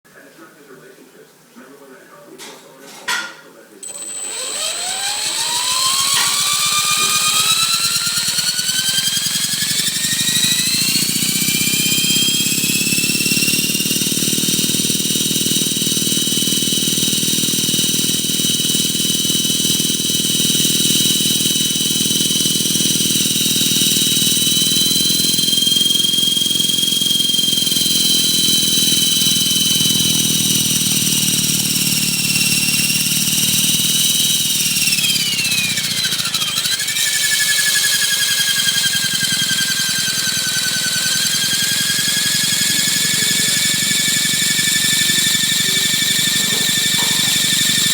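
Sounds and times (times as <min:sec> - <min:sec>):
electric motor and gear whine: 0:03.8 - 0:47.9
rotor drone: 0:03.8 - 0:47.9.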